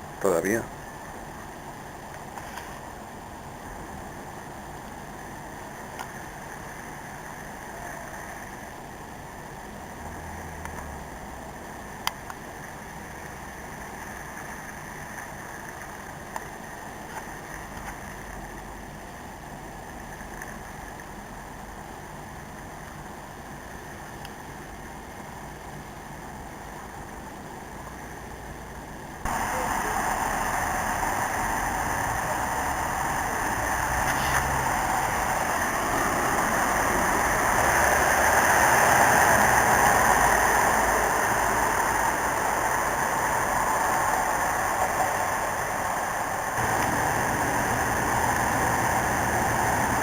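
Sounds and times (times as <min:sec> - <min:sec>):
outdoor hiss and rumble: 0:00.0 - 0:50.0
faint clicks: 0:10.4 - 0:10.9.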